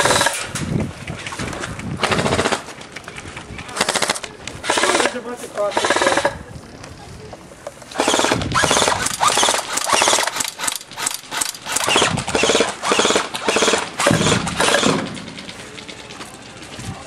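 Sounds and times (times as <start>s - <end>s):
airsoft gun automatic bursts: 0.0s - 0.5s, 2.0s - 2.7s, 3.7s - 6.4s, 8.0s - 16.2s.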